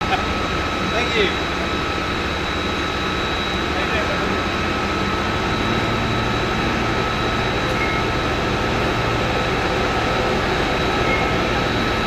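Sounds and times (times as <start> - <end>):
heavy engine rumbling: 0.0 - 12.0
thin high whine: 0.0 - 12.0.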